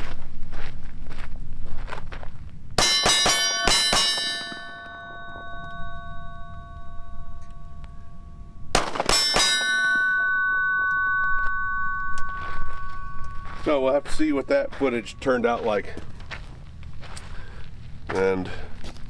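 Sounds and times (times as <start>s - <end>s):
steel target ringing: 2.8s - 16.6s
pistol shots: 8.7s - 9.8s.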